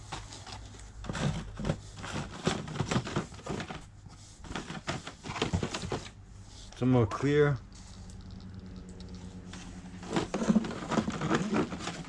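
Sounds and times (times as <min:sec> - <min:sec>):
plastic blister packs clicking and crinkling: 0:00.0 - 0:06.1, 0:10.0 - 0:12.0.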